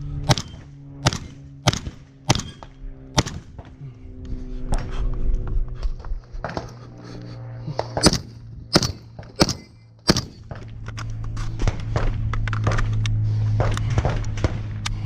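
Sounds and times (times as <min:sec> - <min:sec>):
gunshots: 0:00.2 - 0:03.7, 0:08.0 - 0:10.6.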